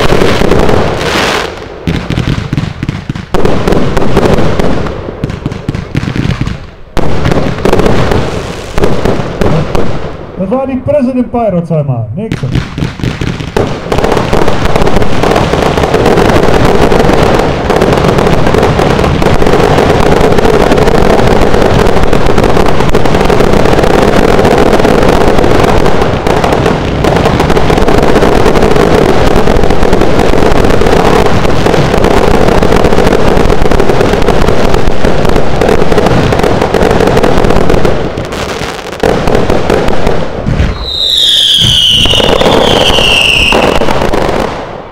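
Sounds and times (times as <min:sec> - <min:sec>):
fireworks barrage crackling: 0:00.0 - 0:44.9
falling firework whistles: 0:01.0 - 0:01.6, 0:40.5 - 0:44.6.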